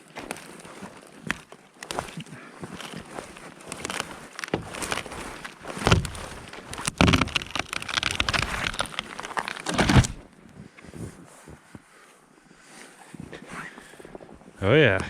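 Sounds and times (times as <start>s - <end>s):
scraping and crunching: 0.0s - 10.4s
wood creaking and cracking: 0.0s - 11.8s.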